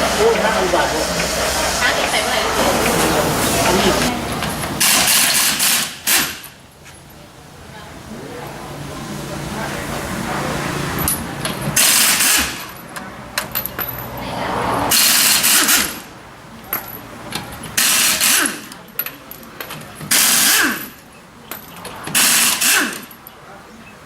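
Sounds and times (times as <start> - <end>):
pneumatic impact wrench bursts: 4.6 - 6.6, 10.9 - 12.9, 14.8 - 16.1, 17.6 - 18.8, 19.7 - 21.0, 21.8 - 23.2.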